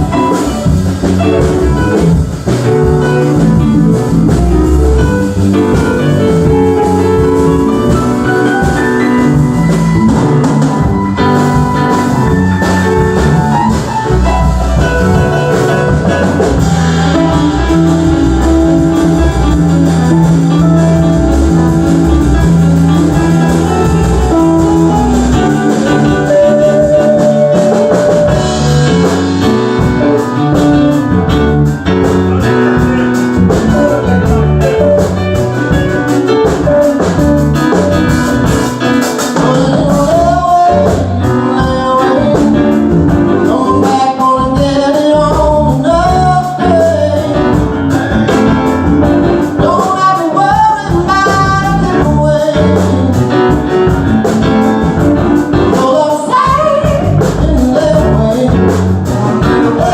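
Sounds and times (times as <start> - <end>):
bass: 0.0 - 59.9
drum kit: 0.0 - 59.9
guitars: 0.0 - 59.9
person singing: 11.0 - 30.6, 37.8 - 54.0, 54.9 - 59.9.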